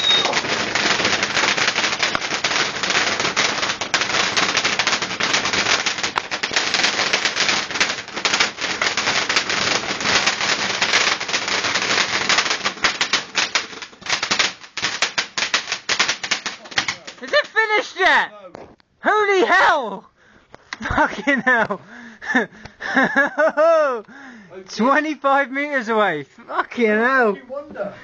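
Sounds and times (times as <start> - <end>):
fireworks crackling and banging: 0.0 - 27.0.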